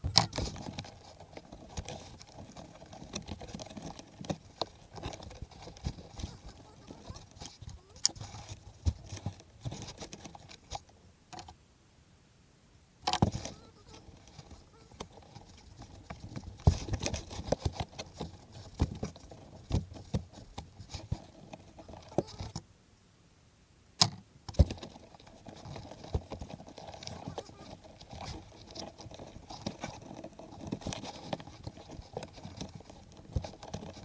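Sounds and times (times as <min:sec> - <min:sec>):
hand tools clicking and rattling: 0:00.0 - 0:10.6, 0:24.5 - 0:34.0.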